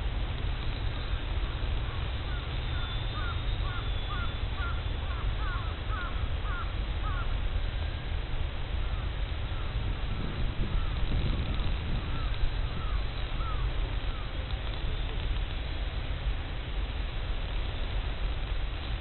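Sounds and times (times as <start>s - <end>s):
bird calling: 1.8s - 7.3s, 8.9s - 9.8s, 10.6s - 15.2s
wind on microphone: 8.9s - 15.9s.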